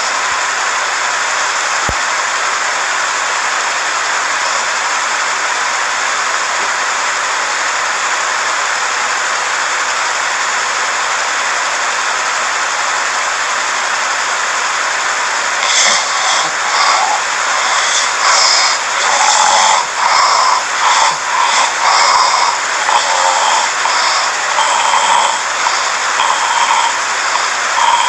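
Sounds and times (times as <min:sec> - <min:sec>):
steady hiss: 0:12.3 - 0:28.0.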